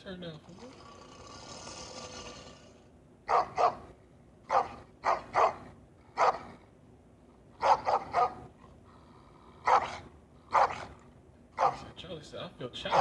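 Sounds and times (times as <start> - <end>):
dog barking: 3.3 - 3.9, 4.5 - 6.5, 7.6 - 8.4, 9.6 - 10.9, 11.6 - 11.9.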